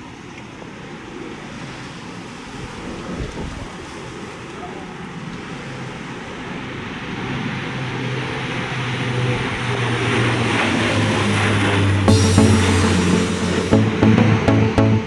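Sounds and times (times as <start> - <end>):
jet engines roaring: 4.0 - 14.5.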